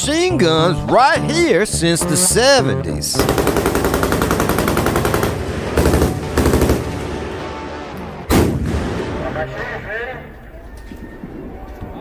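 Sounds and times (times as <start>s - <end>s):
machine-gun fire: 3.2s - 7.6s, 8.3s - 9.4s.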